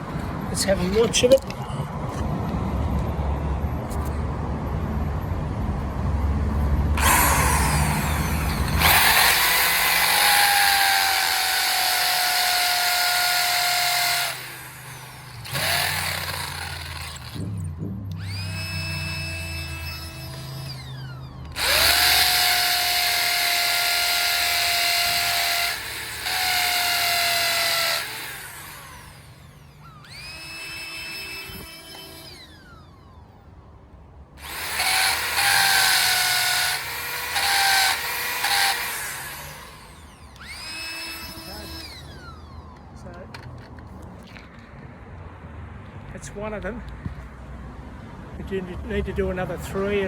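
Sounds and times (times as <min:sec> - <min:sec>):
power drill drilling into concrete: 0:07.0 - 0:17.5, 0:18.2 - 0:33.0, 0:34.4 - 0:42.7.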